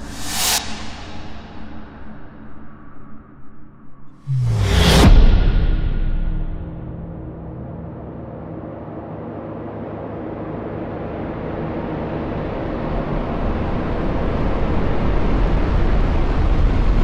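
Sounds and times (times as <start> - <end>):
rumbling riser swell: 0.0 - 12.5.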